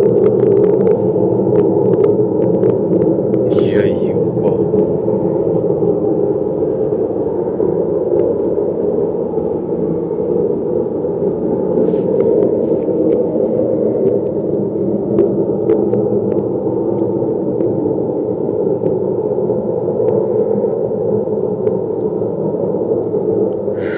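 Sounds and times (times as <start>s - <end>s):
loud rumbling drone: 3.2s - 7.4s.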